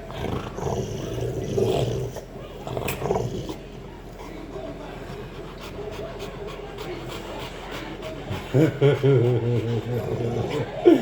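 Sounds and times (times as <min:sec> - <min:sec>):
dog growling: 0:00.0 - 0:03.7, 0:08.2 - 0:11.0.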